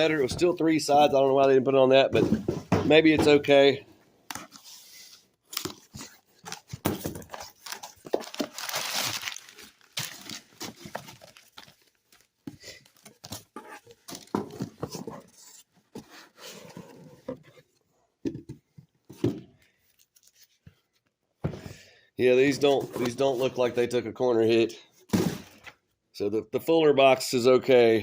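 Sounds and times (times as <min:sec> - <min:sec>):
packaging crinkling and rustling: 0:05.6 - 0:14.4.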